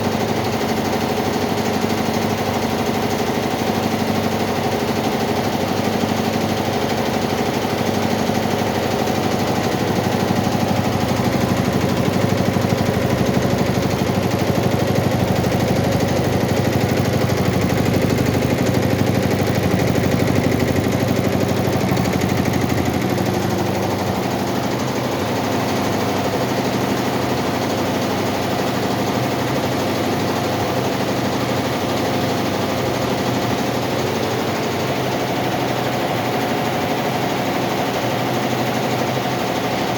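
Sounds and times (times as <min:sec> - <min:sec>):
embroidery machine needle clatter: 0:00.3 - 0:27.7.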